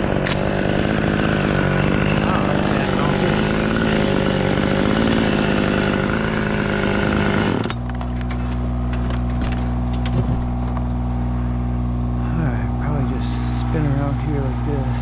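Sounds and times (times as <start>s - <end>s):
chainsaw cutting at full throttle: 0.0s - 9.9s
low engine drone: 0.0s - 15.0s.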